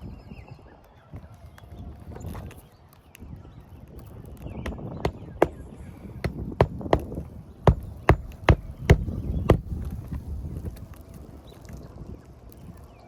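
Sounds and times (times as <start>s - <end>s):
hammer blows on shingle roof: 4.6s - 10.1s.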